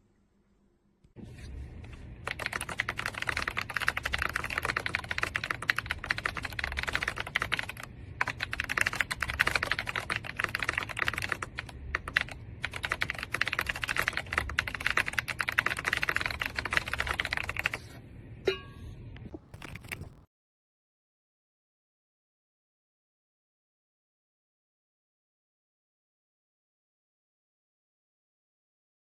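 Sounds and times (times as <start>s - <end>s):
fast mechanical keyboard typing: 2.2s - 17.8s, 19.5s - 20.2s.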